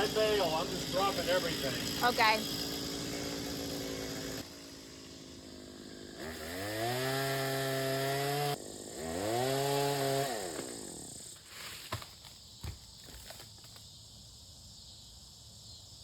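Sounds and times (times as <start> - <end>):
chainsaw revving: 0.0 - 11.4.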